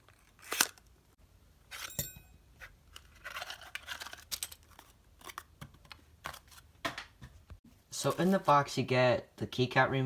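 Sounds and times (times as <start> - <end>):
packaging rustling and scraping: 2.6 - 6.7.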